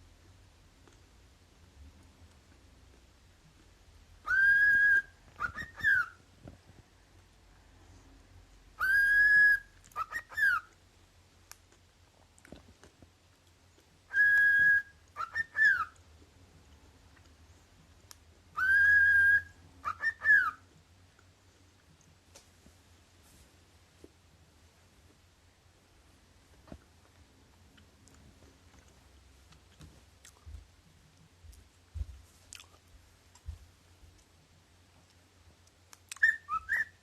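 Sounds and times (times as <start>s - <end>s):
cockatiel whistling a call: 4.2s - 6.2s, 8.8s - 10.7s, 14.1s - 16.0s, 18.5s - 20.6s, 36.2s - 37.0s.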